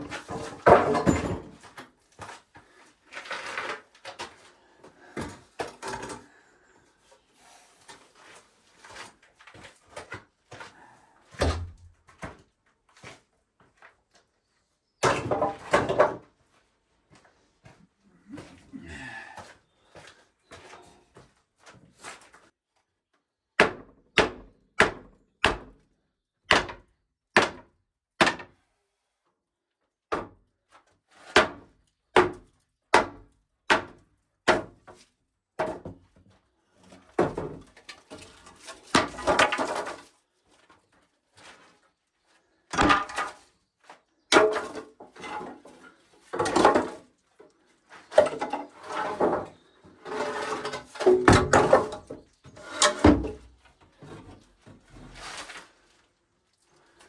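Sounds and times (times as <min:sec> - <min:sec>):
hammering on wood: 0:23.6 - 0:25.8, 0:26.5 - 0:26.8, 0:27.4 - 0:28.5, 0:32.2 - 0:34.7.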